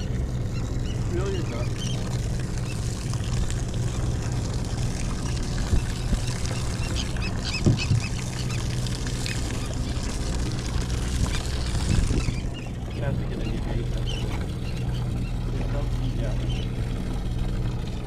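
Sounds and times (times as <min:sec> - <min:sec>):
boat engine humming: 0:00.0 - 0:18.0
high bird calls: 0:00.5 - 0:02.9, 0:05.8 - 0:08.7.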